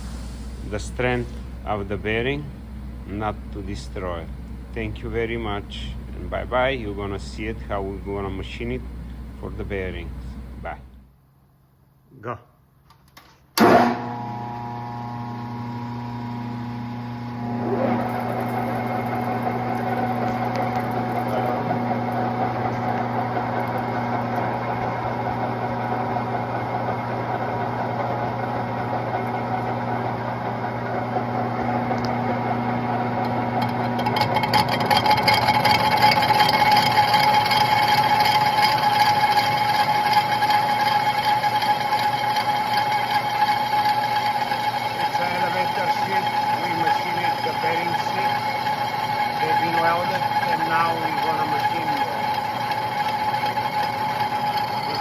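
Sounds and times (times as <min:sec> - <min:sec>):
electrical hum: 0:00.0 - 0:11.2, 0:13.6 - 0:55.0
rattly machine running: 0:17.4 - 0:55.0.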